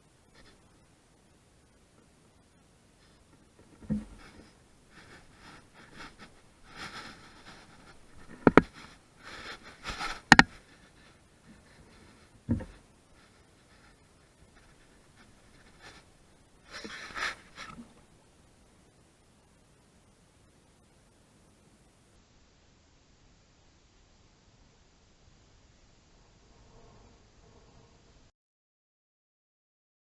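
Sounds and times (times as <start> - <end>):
rustling and scraping: 0.3 - 0.7, 3.0 - 18.1
sharp knocks and thumps: 3.6 - 9.0, 9.8 - 10.6, 12.5 - 12.8.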